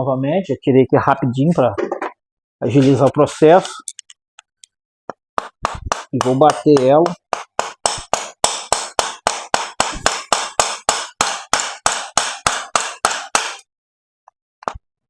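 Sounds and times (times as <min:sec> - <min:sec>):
quick hammer blows on metal: 0:05.4 - 0:13.6.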